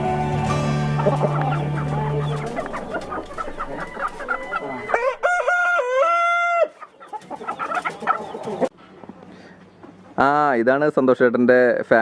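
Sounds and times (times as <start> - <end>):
chickens clucking: 0.7 - 10.1
rooster crowing: 1.2 - 6.8.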